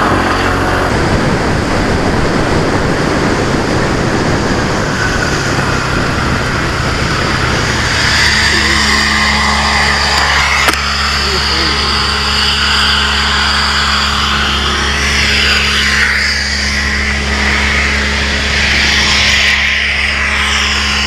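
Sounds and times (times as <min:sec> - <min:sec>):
motorcycle engine running: 0:00.0 - 0:21.0
wind rush: 0:00.0 - 0:21.0.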